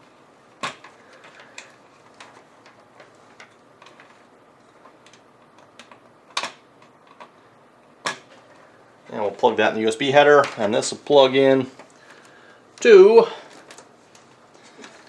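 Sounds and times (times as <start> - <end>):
cables and plastic connectors clicking: 0.6 - 8.6, 13.5 - 15.0.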